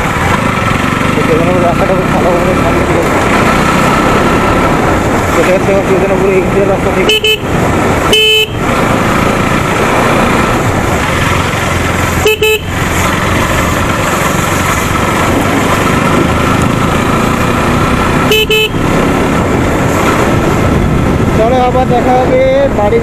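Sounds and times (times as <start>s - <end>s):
wind and road noise: 0.0s - 23.0s
short horn beep: 7.1s - 7.5s, 8.1s - 8.6s, 12.2s - 12.8s, 18.3s - 18.8s.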